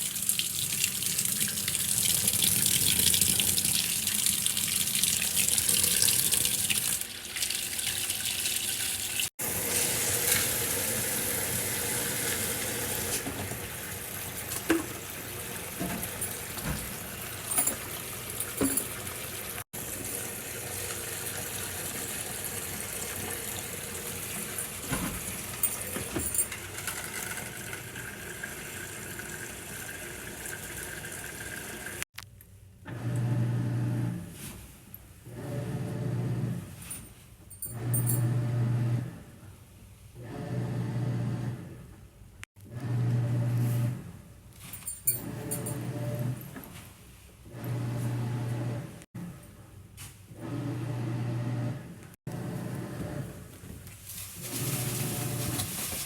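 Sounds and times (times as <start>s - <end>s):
water running and splashing: 0.0s - 25.8s, 54.3s - 56.0s.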